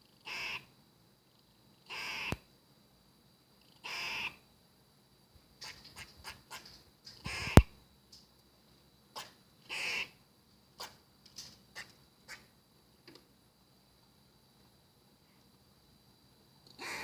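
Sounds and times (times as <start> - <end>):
squirrel raspy call: 0.2 - 0.7, 1.8 - 2.4, 3.7 - 4.4, 5.6 - 7.7, 9.1 - 10.2, 10.8 - 11.0, 11.7 - 12.5, 16.8 - 17.0.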